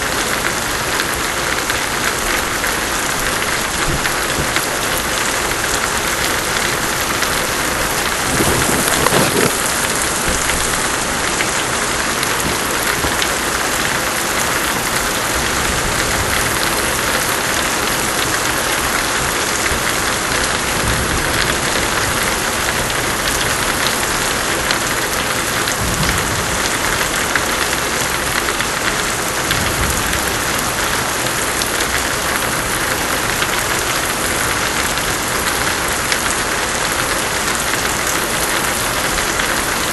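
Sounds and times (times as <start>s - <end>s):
pouring rain: 0.0s - 39.9s
thunder clap: 3.3s - 13.5s, 25.7s - 27.4s.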